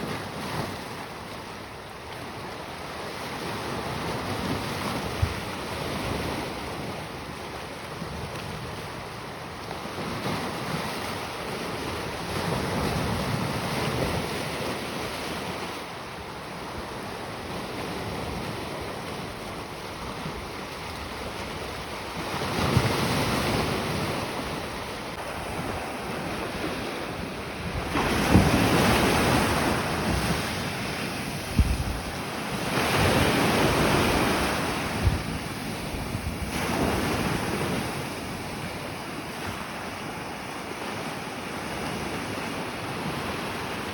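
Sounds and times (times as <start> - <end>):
wind rumbling on microphone: 16.7 - 38.8
waves breaking: 17.4 - 43.9.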